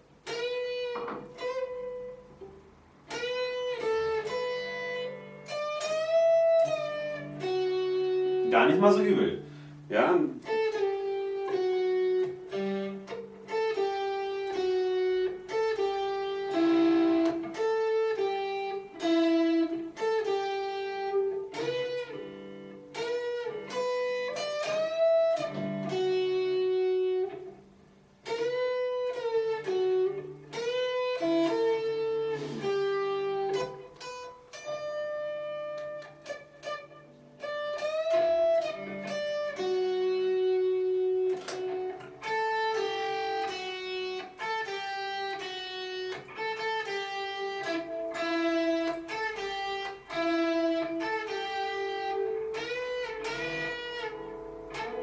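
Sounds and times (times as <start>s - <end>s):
guitar lead line with bent notes: 0.0s - 55.0s.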